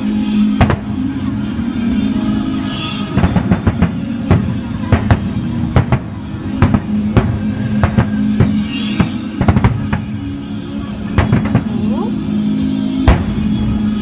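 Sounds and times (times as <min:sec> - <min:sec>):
music playing: 0:00.0 - 0:14.0
fireworks bangs: 0:03.1 - 0:10.2, 0:11.1 - 0:11.9.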